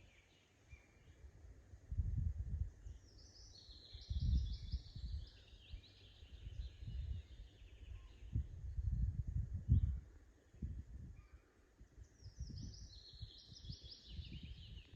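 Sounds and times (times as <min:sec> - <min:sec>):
songbird singing: 0:00.0 - 0:01.6, 0:02.5 - 0:14.9
low gusty rumble: 0:01.8 - 0:03.0, 0:04.1 - 0:05.3, 0:06.3 - 0:11.2.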